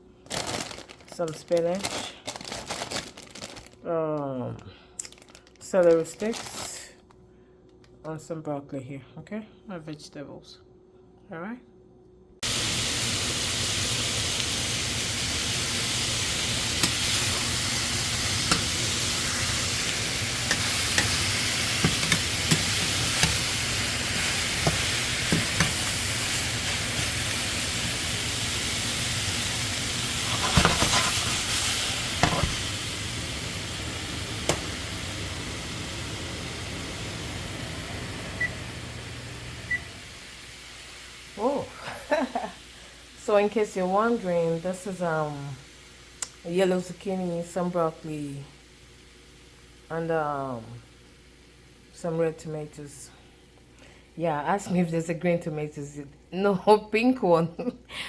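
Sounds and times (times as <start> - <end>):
vegetables sizzling in oil: 12.4 - 52.4.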